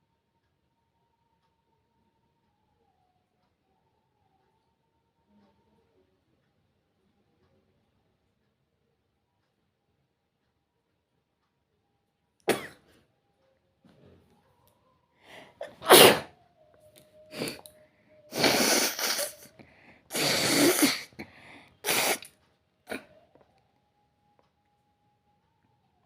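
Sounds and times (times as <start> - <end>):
person sneezing: 15.6 - 16.3, 17.3 - 17.6, 18.3 - 19.5, 20.1 - 22.3.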